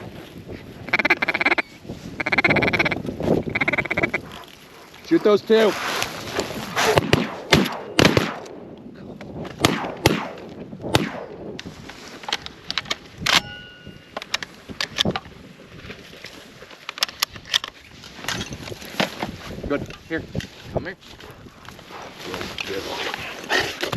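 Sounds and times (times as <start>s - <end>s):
shotgun shots: 6.7s - 8.7s, 9.6s - 11.6s.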